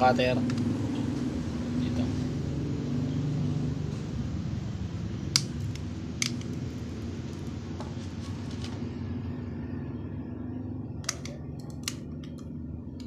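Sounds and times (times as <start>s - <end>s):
steady low hum: 0.0s - 13.0s
cutter snipping cable: 11.1s - 12.4s.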